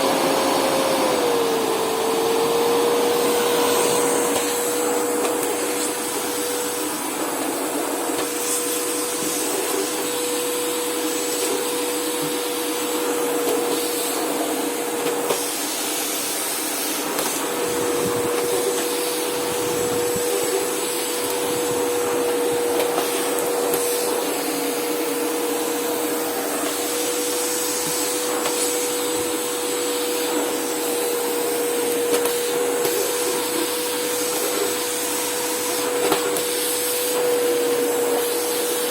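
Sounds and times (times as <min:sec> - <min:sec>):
vacuum cleaner running: 0:00.0 - 0:38.9.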